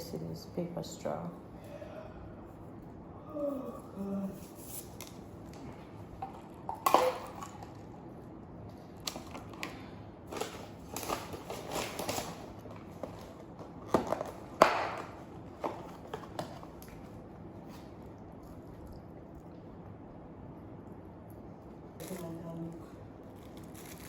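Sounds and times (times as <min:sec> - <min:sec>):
crinkling handling noises: 0:08.6 - 0:18.9, 0:23.2 - 0:24.0.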